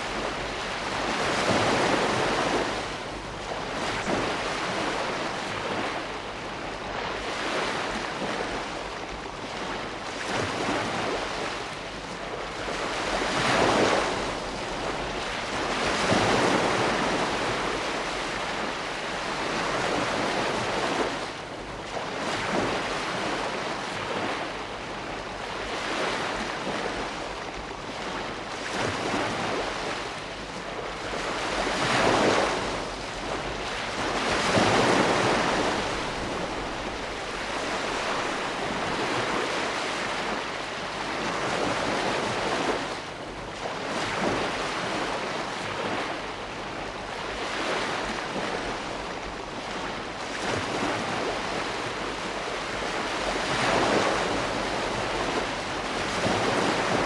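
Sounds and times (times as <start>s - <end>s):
ocean waves breaking on shore: 0.0s - 57.0s.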